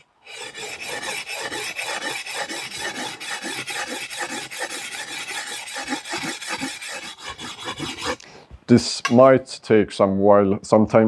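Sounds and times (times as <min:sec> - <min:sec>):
whetstone scraping steel blade: 0:00.3 - 0:08.2.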